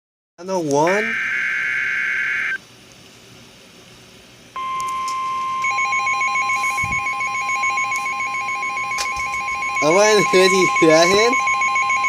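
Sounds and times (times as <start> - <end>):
rapid pulsing beeps: 4.6 - 12.0
steady alert tone: 4.6 - 12.0.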